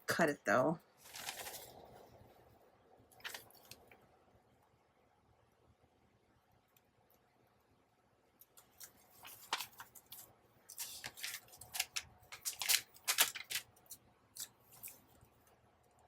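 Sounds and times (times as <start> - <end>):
scissors snipping paper: 10.7 - 15.0.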